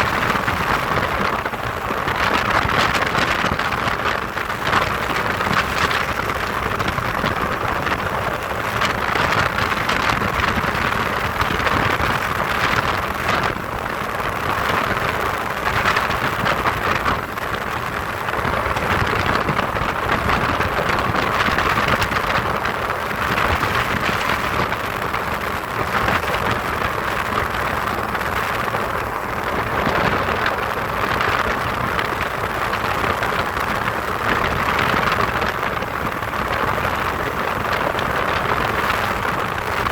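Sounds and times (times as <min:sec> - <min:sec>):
aircraft engine in flight: 0:00.0 - 0:39.9
wind on microphone: 0:00.0 - 0:39.9.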